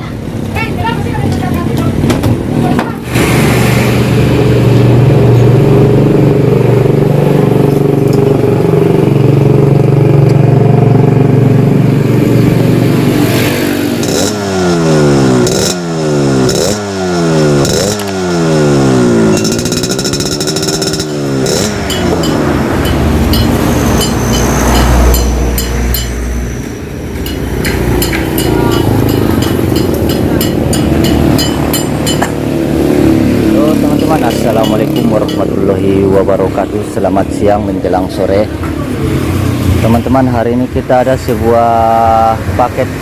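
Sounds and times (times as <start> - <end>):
two-stroke engine revving: 1.9 - 43.0.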